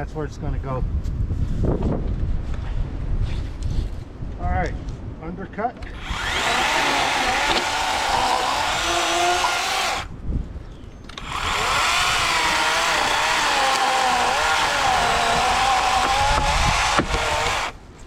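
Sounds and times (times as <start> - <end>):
electric chainsaw cutting: 5.8 - 10.1, 11.2 - 17.8.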